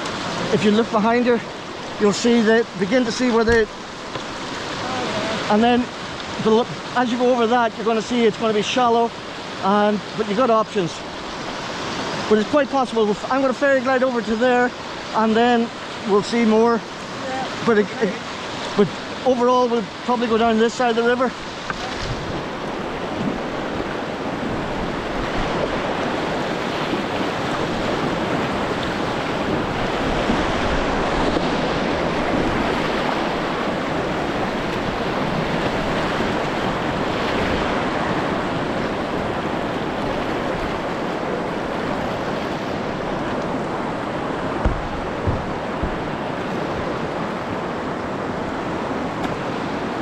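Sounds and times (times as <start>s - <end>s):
river water rushing over rapids: 0.0s - 50.0s
brief knock: 44.6s - 46.1s.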